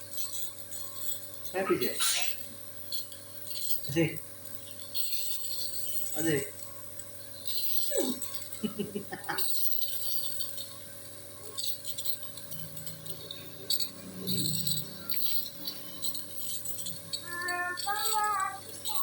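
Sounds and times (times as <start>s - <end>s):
suction machine motor hum: 9.6s - 19.0s.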